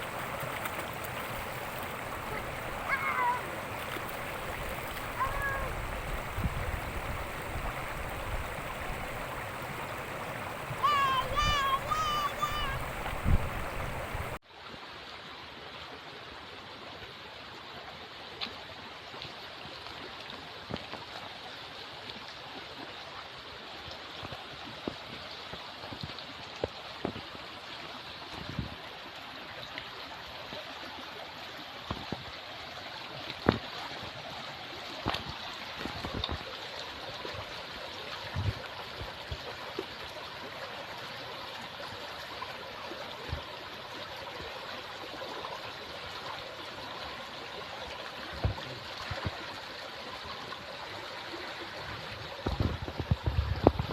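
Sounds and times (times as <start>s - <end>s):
stream water rushing: 0.0s - 53.9s.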